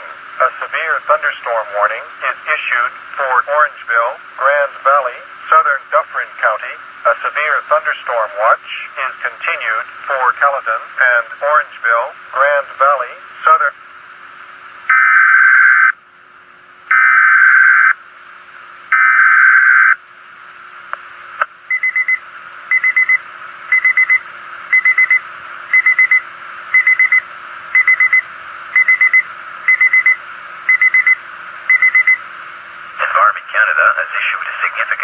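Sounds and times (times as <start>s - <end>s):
faint steady hum: 0.0s - 35.0s
buzzing digital header tones: 18.9s - 20.0s.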